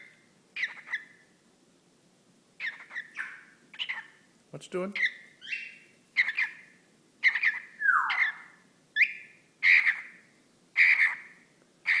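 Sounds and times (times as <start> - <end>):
cockatiel chirping and squawking: 0.0 - 1.2, 2.6 - 4.2, 5.0 - 10.2, 10.8 - 12.0.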